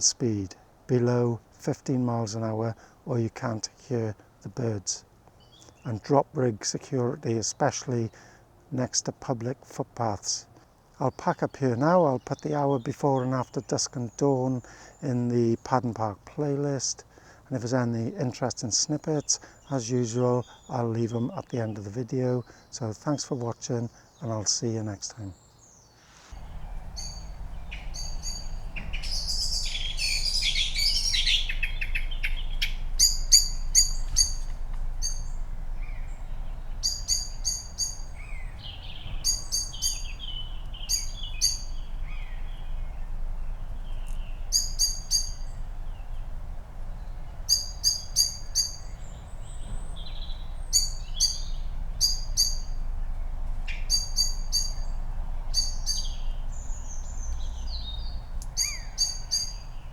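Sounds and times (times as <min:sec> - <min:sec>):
songbird alarm calls: 0:25.3 - 0:59.9
buzzard sliding calls: 0:26.3 - 0:59.9.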